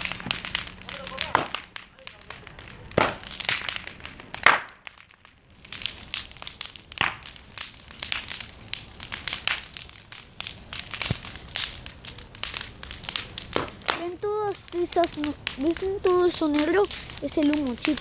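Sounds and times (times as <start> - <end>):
bonfire crackling and popping: 0.0 - 18.0.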